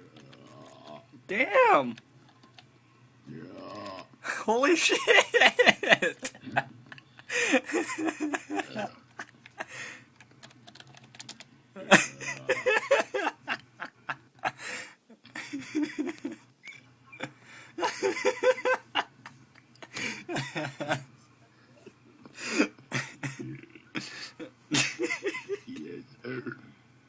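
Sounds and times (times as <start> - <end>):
faint low hum: 0.0 - 27.0
people laughing: 4.3 - 10.0, 11.8 - 16.4, 17.1 - 21.1, 22.9 - 25.8.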